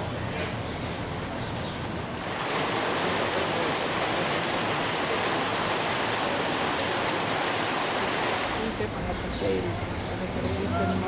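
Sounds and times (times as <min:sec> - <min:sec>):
water rushing: 0:02.1 - 0:09.9.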